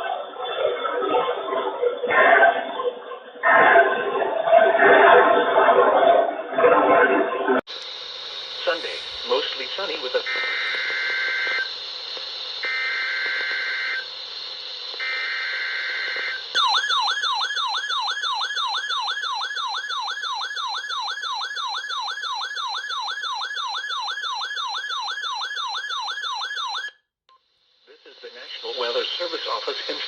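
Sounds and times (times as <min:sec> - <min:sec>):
harsh buzzing data bursts: 0:07.7 - 0:16.9
warbling alert siren: 0:08.6 - 0:11.7, 0:12.6 - 0:14.1, 0:15.0 - 0:27.0.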